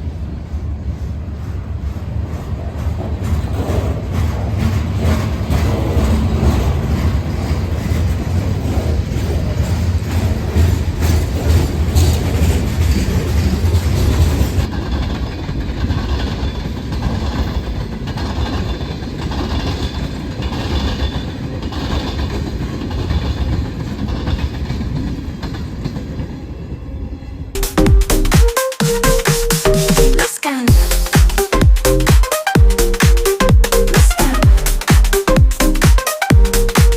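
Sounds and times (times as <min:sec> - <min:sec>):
train wheels clacking over rail joints: 0:00.8 - 0:26.2.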